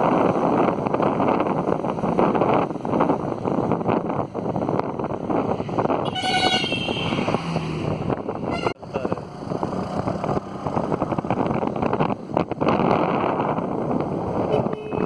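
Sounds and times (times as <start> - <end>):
road noise: 0.0 - 15.0
wind buffeting microphone: 0.0 - 15.0
vehicle horn honking: 6.1 - 7.4, 8.5 - 8.8, 14.5 - 15.0.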